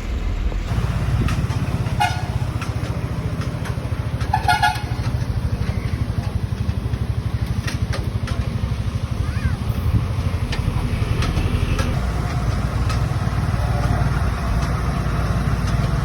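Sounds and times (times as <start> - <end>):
vehicle engine chugging: 0.0 - 16.0
car horn beeps: 1.9 - 2.5, 4.2 - 5.2.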